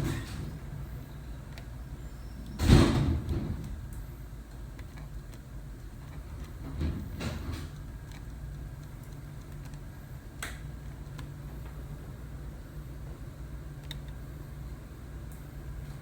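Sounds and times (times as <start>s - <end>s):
air conditioner fan humming: 0.0s - 16.0s.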